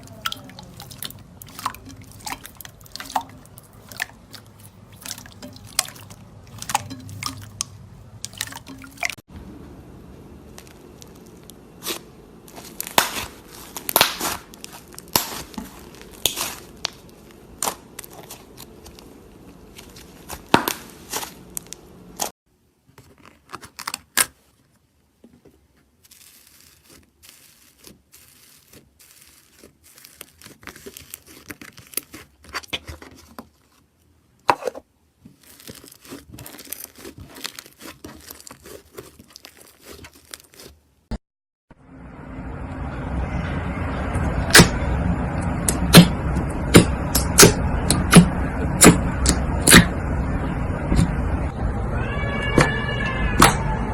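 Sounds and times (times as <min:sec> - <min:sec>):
slime crackling and popping: 0:10.5 - 0:19.1, 0:26.0 - 0:33.8, 0:35.2 - 0:40.8.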